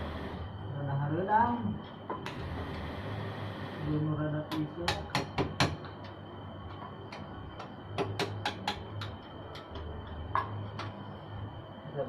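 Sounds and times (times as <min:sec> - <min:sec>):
hand tools clicking and tapping: 0:04.5 - 0:11.0.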